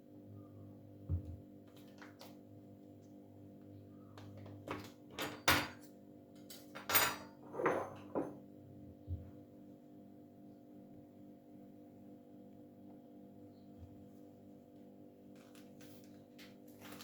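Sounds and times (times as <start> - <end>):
dishes and utensils clinking: 4.7 - 5.9, 6.5 - 8.4.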